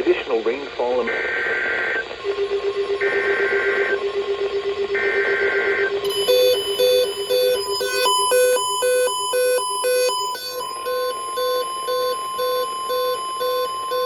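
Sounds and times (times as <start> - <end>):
electronic alert beeps: 5.3 - 14.0
raspy two-tone data bursts: 6.0 - 14.0.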